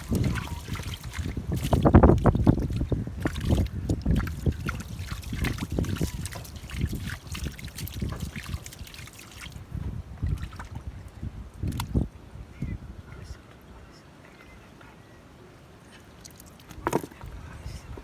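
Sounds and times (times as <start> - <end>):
water sloshing and splashing: 0.0 - 12.0, 16.0 - 18.0.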